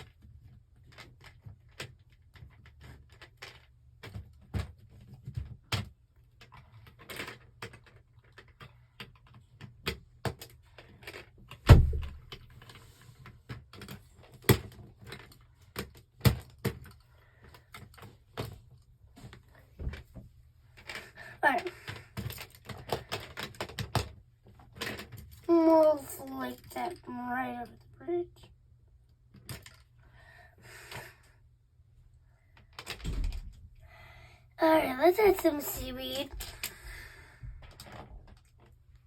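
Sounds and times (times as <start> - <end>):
plastic toy bricks clicking: 5.3 - 11.6.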